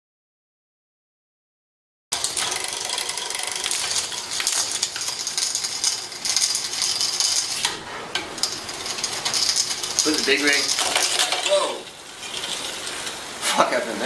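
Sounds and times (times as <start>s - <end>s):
bicycle chain clicking and whirring: 2.1s - 13.9s.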